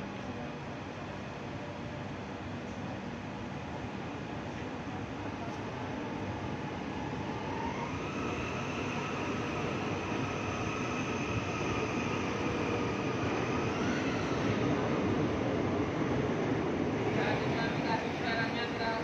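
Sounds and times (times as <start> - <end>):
electric train rumbling: 3.3 - 19.0.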